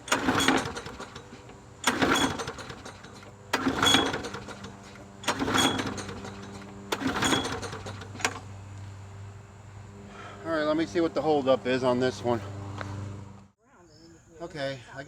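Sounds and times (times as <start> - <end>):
recoil starter pulled: 0.0 - 8.5
mower engine cranking: 0.0 - 8.6.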